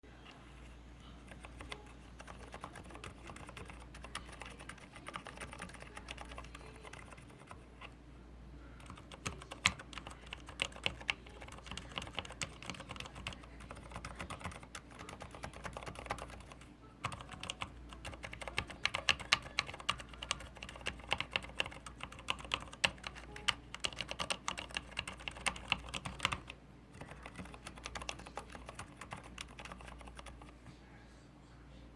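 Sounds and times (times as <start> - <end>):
mechanical keyboard typing: 1.2 - 7.9, 8.8 - 30.6.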